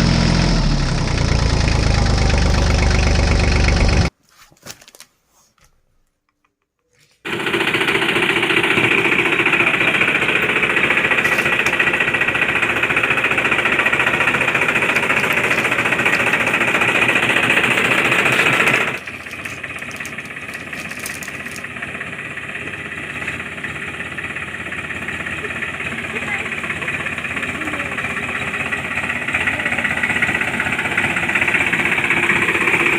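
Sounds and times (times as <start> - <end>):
small machine rattling: 7.3 - 23.5.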